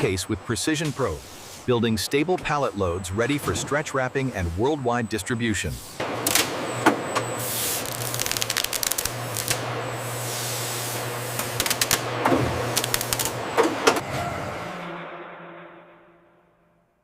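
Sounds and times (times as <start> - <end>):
packaging machinery hum and hiss: 0.5 - 1.8, 3.4 - 14.0
sharp mechanical clicks: 11.4 - 12.0, 12.7 - 13.4.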